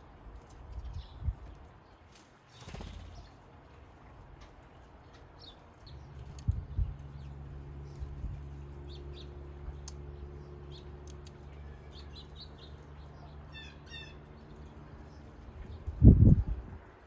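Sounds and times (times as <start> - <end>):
birds chirping: 0.0 - 17.0
low hum: 5.8 - 16.9.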